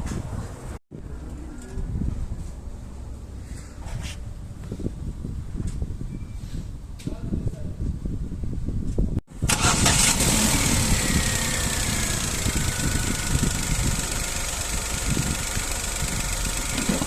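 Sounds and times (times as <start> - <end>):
car engine idling: 9.5 - 17.0.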